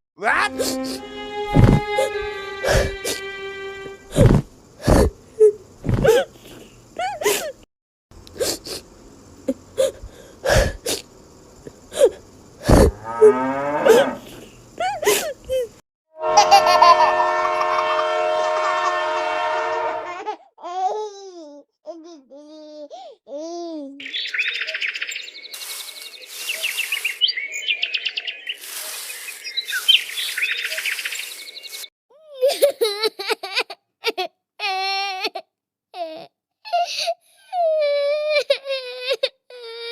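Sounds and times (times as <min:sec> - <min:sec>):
short wavering cries: 0:00.2 - 0:04.2
birds chirping: 0:24.0 - 0:31.9.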